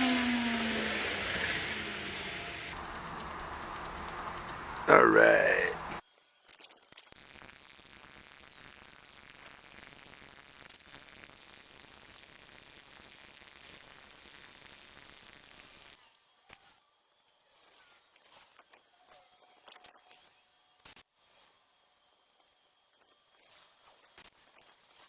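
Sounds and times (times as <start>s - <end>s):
welding arc hissing: 7.1s - 16.0s.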